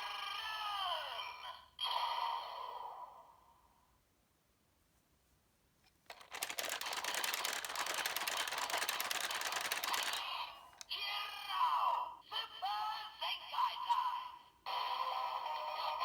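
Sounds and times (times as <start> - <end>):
rapid clicking with hiss: 6.1 - 10.3.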